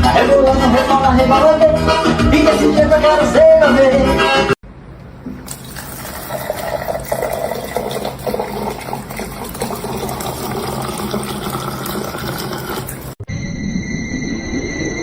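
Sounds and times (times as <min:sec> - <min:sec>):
water running: 0:05.0 - 0:13.2.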